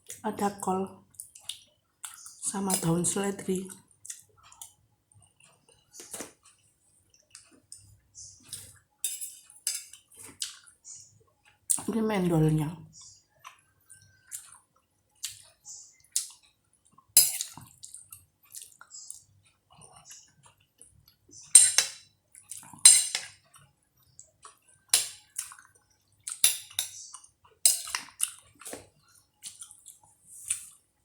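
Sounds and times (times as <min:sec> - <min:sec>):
metal spoon clinking on dishware: 0:09.0 - 0:10.0, 0:17.2 - 0:17.6, 0:21.5 - 0:22.1, 0:22.8 - 0:23.4, 0:24.9 - 0:25.2, 0:26.4 - 0:28.1.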